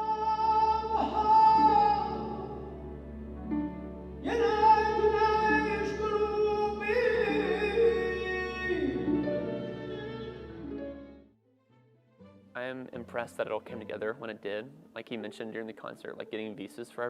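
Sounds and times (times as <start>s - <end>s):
person singing long notes: 0.0s - 3.2s, 4.2s - 11.1s
instrumental accompaniment: 0.0s - 16.6s.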